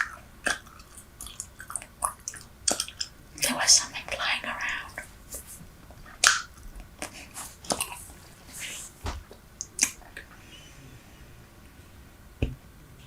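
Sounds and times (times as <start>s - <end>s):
gum chewing smacks and clicks: 0.0s - 3.2s, 5.9s - 8.0s, 9.6s - 10.3s.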